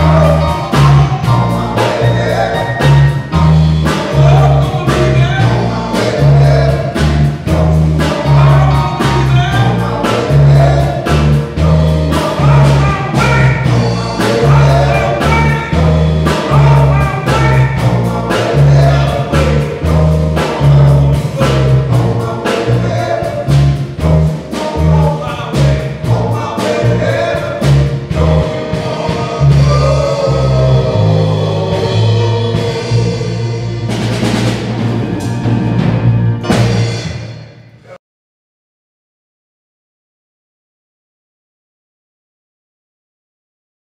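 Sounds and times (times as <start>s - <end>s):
men singing together: 0.0s - 34.3s
bass line: 0.0s - 38.0s
drum beats: 0.0s - 38.0s.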